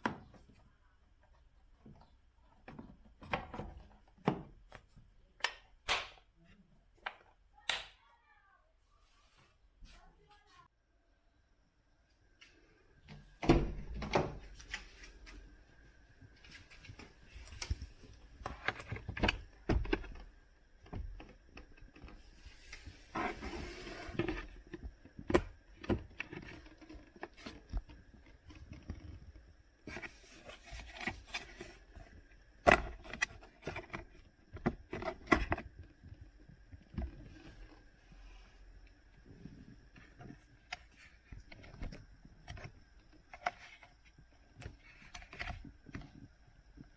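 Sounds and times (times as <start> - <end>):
plastic scraping and rubbing: 16.7 - 38.3
plastic clicks and knocks: 18.4 - 22.2.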